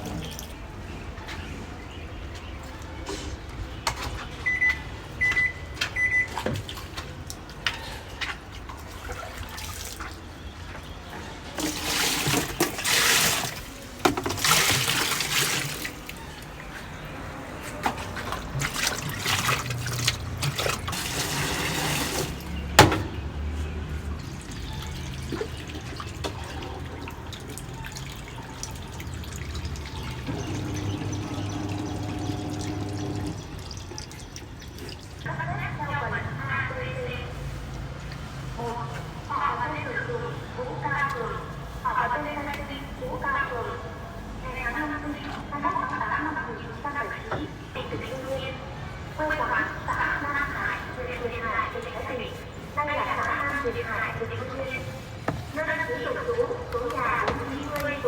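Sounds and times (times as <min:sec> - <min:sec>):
short beeps: 0:04.5 - 0:06.3
water running and splashing: 0:06.3 - 0:35.3
rushing spraying water: 0:11.6 - 0:16.3, 0:18.5 - 0:22.6.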